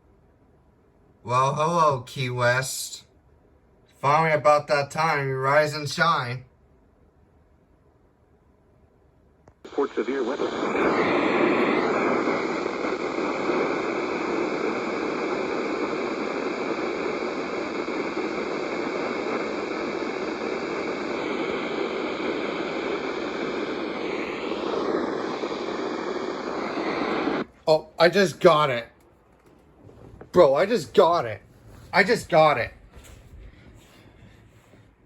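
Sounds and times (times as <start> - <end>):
radio static hiss: 9.6 - 29.0, 30.0 - 33.0.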